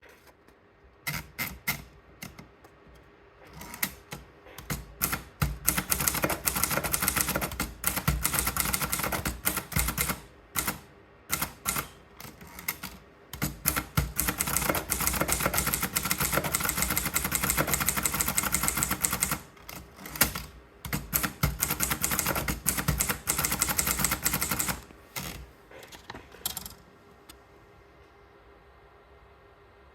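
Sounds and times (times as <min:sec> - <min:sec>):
manual typewriter typing: 0:03.4 - 0:26.8.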